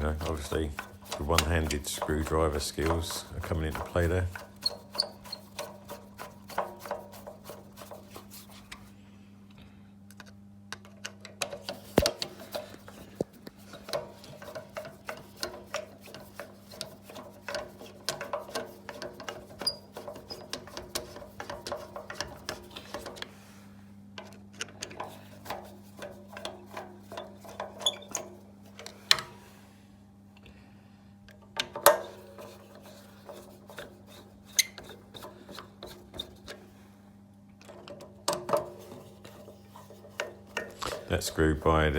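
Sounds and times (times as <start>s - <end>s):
tools knocking: 0.0s - 8.0s
screwdriver clicking and scraping: 0.0s - 8.9s, 11.0s - 23.3s, 24.2s - 29.3s, 31.7s - 36.6s, 37.6s - 41.7s
steady low hum: 35.0s - 41.9s.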